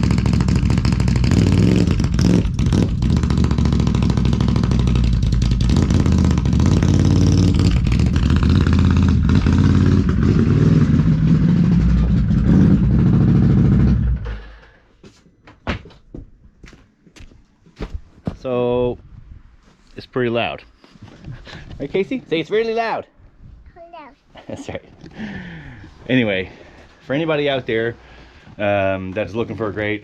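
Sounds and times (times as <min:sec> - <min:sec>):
loud atv engine revving: 0:00.0 - 0:14.4.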